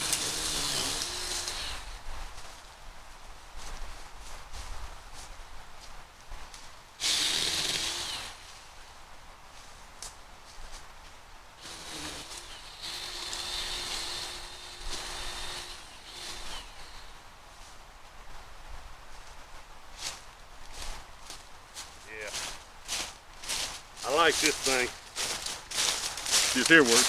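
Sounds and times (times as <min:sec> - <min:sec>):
electric chainsaw motor whining: 0:00.0 - 0:02.0, 0:07.0 - 0:08.5, 0:11.6 - 0:17.2.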